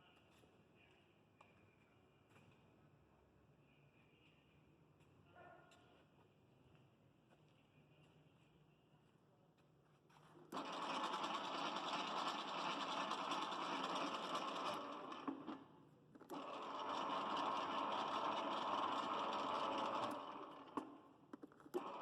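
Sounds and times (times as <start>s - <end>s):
mixer whirring: 10.5s - 22.0s.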